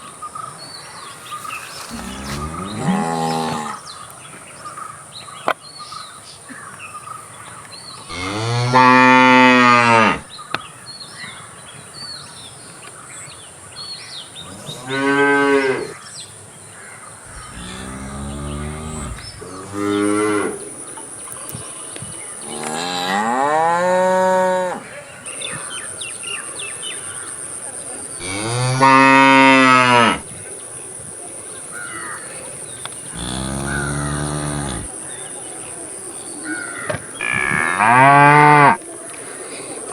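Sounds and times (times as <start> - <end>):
cattle mooing: 1.9 - 3.8, 8.1 - 10.2, 17.3 - 20.6, 28.2 - 30.2, 33.1 - 34.9.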